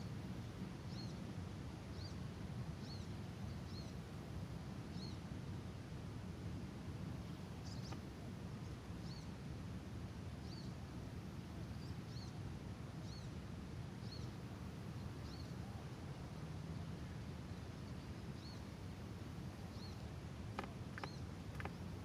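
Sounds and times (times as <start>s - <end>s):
low rumbling background noise: 0.0s - 22.0s
small bird chirping: 7.6s - 8.0s, 19.7s - 22.0s.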